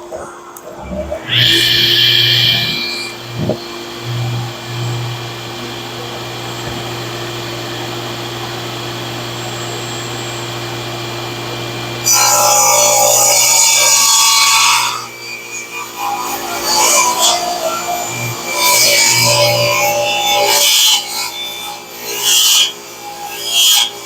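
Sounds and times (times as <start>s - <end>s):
table saw humming: 0.0s - 24.0s
saw blade cutting wood: 0.8s - 8.3s.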